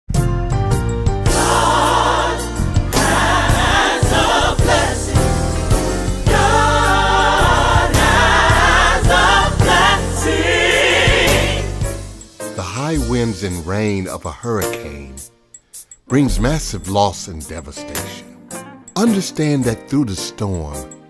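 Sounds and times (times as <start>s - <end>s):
steady bass accompaniment: 0.2s - 12.3s
choir singing gospel: 1.2s - 13.4s.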